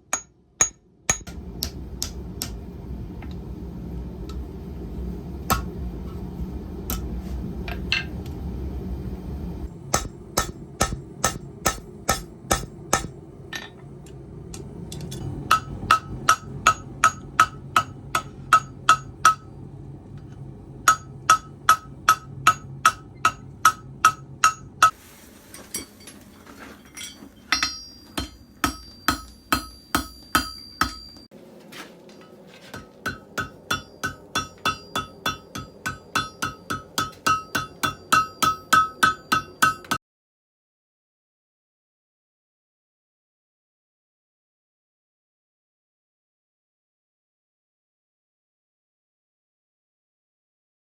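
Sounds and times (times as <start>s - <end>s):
hammer striking steel on anvil: 0.1s - 2.7s, 5.5s - 6.2s, 6.8s - 8.2s, 9.9s - 13.8s, 14.6s - 19.6s, 20.8s - 25.0s, 26.9s - 31.3s, 32.2s - 40.0s.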